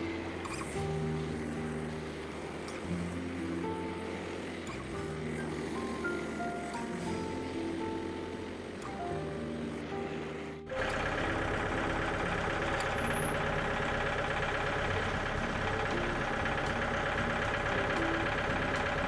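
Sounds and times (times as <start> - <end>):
background music: 0.0 - 12.8
sawmill gas engine running: 0.0 - 19.0.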